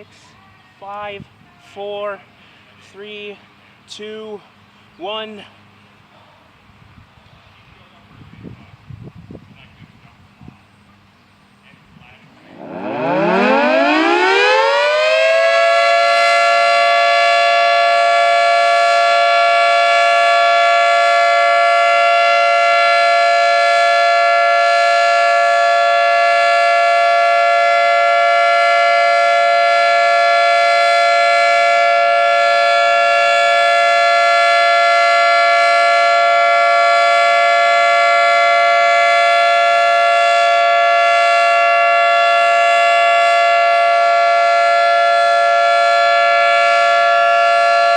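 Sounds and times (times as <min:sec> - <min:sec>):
civil defense siren: 0:12.4 - 0:47.9.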